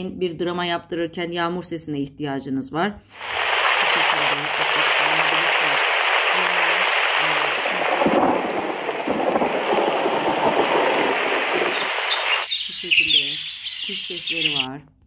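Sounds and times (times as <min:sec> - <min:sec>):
heavy rain hiss: 0:03.1 - 0:14.6.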